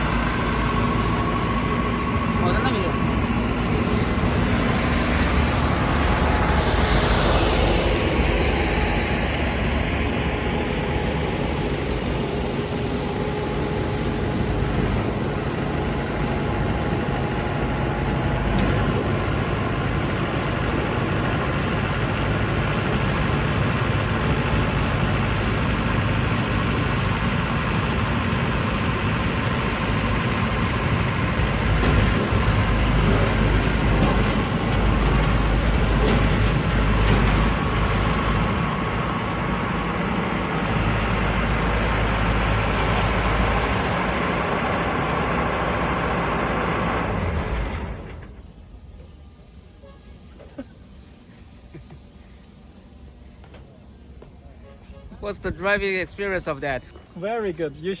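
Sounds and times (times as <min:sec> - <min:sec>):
combine harvester engine rumbling: 0:00.0 - 0:58.0
brief rushing sound: 0:02.2 - 0:09.2.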